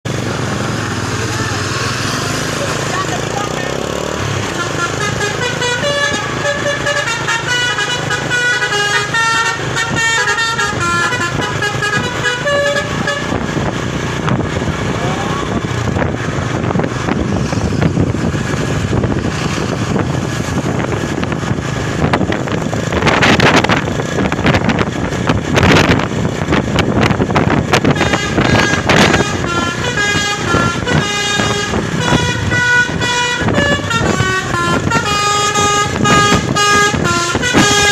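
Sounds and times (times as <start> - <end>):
bus engine rumble: 0.0 - 37.9
road noise: 0.0 - 37.9
musical bus horn playing a tune: 4.4 - 13.6, 27.8 - 37.9.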